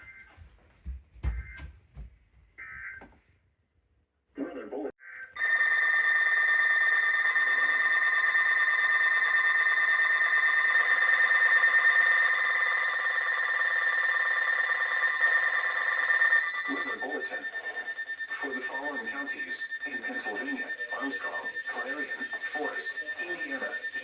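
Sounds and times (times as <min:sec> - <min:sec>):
steady electronic alarm tone: 0:05.4 - 0:24.0.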